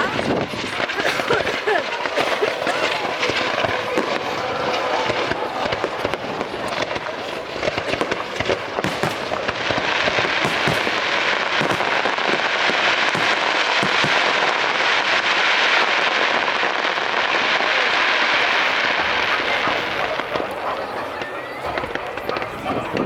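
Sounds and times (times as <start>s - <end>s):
fireworks pops and bangs: 0.0s - 23.0s.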